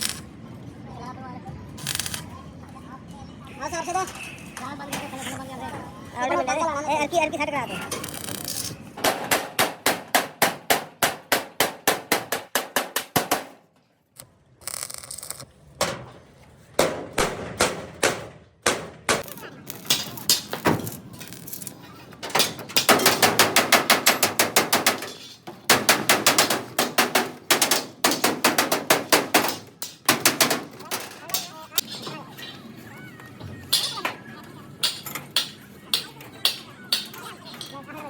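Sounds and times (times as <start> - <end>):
hammer striking metal: 22.2 - 32.2, 34.8 - 37.7.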